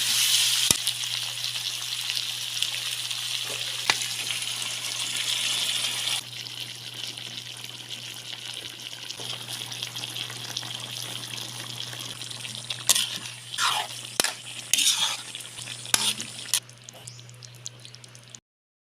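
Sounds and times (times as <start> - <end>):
meat sizzling in a pan: 0.0 - 18.3
utensil scraping a pan: 12.7 - 16.6.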